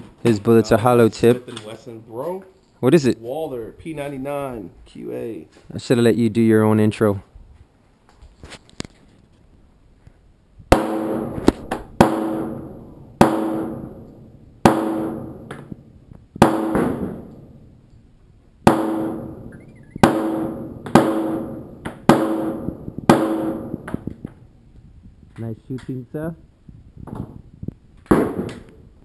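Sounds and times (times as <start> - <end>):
pistol shots echoing: 18.7 - 23.9.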